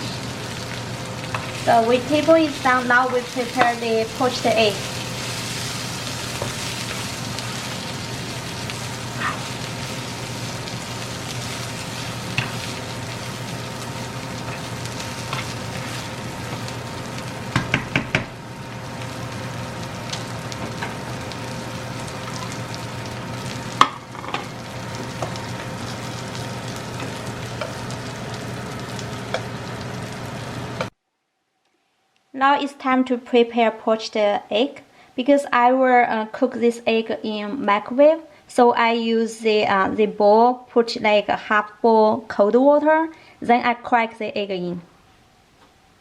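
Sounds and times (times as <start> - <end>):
food sizzling in frying pan: 0.0 - 30.9.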